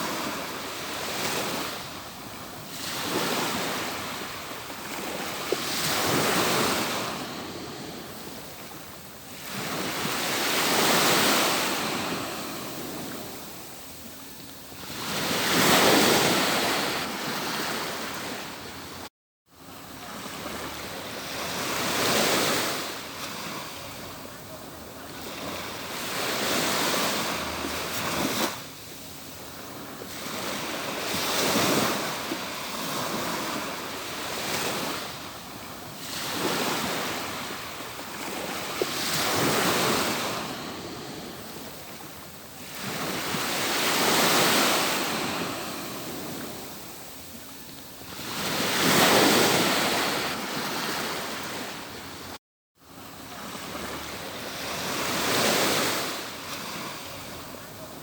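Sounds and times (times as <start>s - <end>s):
surf breaking on a beach: 0.0s - 13.7s, 19.6s - 52.2s.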